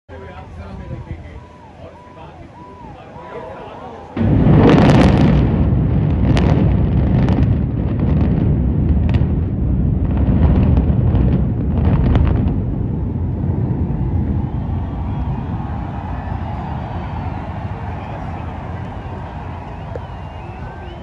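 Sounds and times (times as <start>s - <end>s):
sharp explosive cracks: 4.2s - 20.5s
deep rumble of building collapse: 4.2s - 21.0s.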